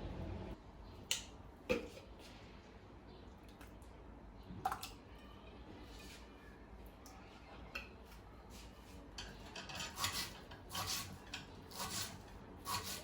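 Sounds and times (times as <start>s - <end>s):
dishes and metal utensils clinking: 9.1s - 11.6s.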